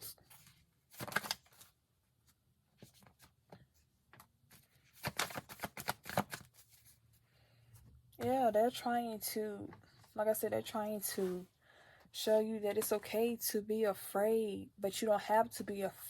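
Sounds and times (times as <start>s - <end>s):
cards being shuffled: 0.3s - 1.7s, 4.1s - 7.0s.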